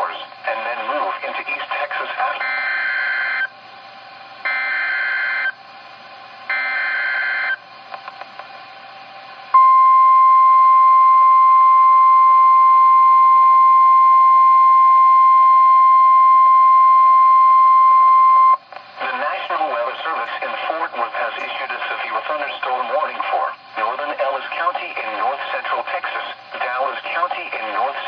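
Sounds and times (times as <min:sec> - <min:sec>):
steady warning alarm tone: 0:02.4 - 0:03.5, 0:04.4 - 0:05.6, 0:06.5 - 0:07.6, 0:09.6 - 0:18.6.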